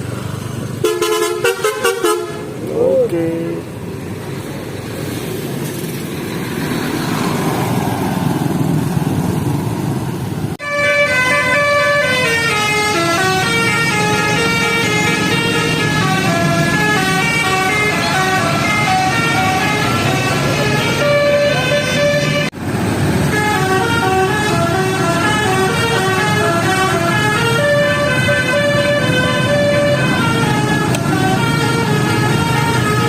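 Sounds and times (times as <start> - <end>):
heavy truck engine: 0.0 - 33.0
musical horn playing a tune: 0.8 - 2.5, 10.6 - 22.5, 23.3 - 33.0.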